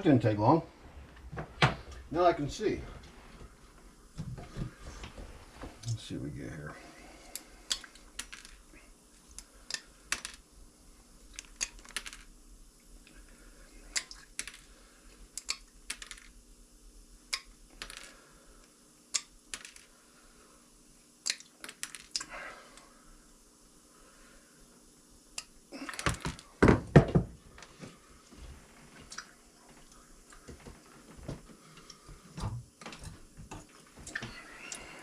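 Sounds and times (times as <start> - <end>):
soft hiss: 0.0 - 26.6.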